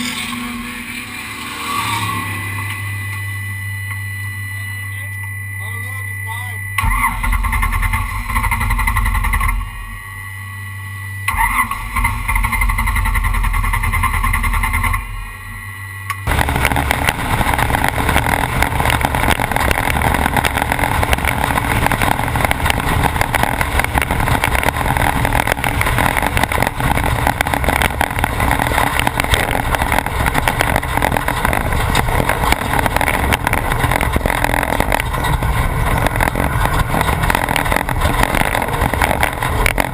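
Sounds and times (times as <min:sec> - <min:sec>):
truck engine rumble: 0:00.0 - 0:03.6, 0:11.3 - 0:15.6, 0:16.2 - 0:39.9
driving noise: 0:00.0 - 0:10.4, 0:11.1 - 0:39.9.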